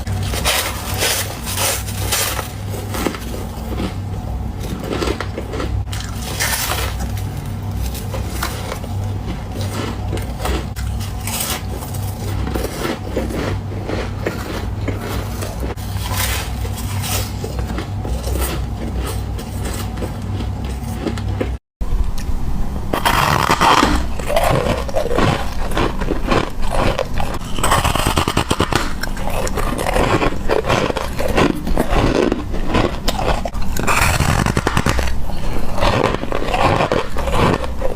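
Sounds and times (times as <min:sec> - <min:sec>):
ice crunching being chewed: 0:00.0 - 0:21.6, 0:23.0 - 0:37.9
steady low hum: 0:00.0 - 0:37.9.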